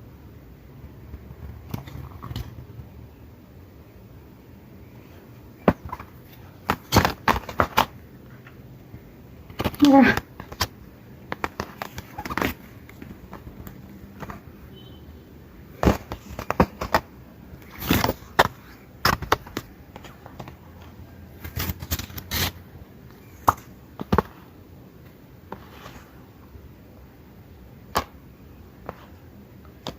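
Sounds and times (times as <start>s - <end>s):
packaging clicks and taps: 9.5s - 14.4s, 15.8s - 17.1s.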